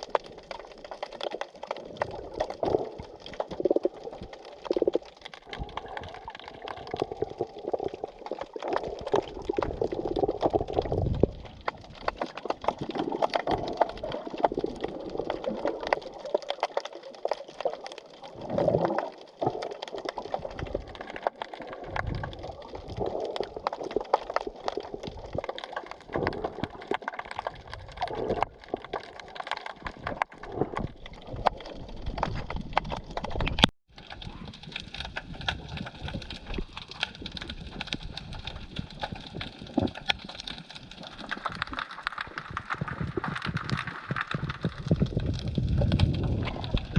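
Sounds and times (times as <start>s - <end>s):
dense underwater crackle: 0.0s - 46.9s
water sloshing and gurgling: 0.0s - 46.9s.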